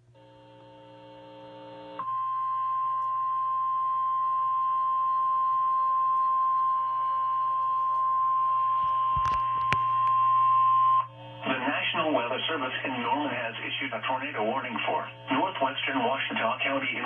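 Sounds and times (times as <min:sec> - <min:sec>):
long high warning beep: 0:02.0 - 0:11.2.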